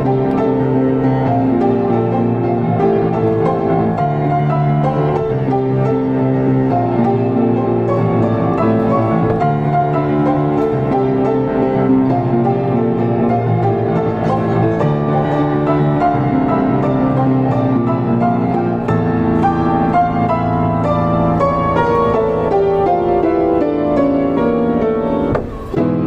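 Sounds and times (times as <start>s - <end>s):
solo piano: 0.0s - 26.0s.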